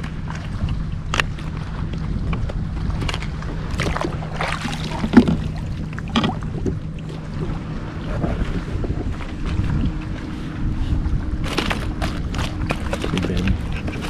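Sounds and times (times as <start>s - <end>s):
water against kayak: 0.0s - 14.0s
wind buffeting microphone: 0.0s - 14.0s.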